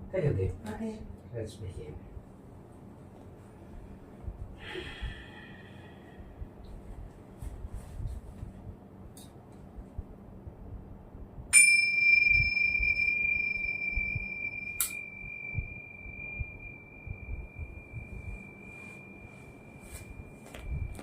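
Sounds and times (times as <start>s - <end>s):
metal bowl ringing tone: 11.5s - 21.0s.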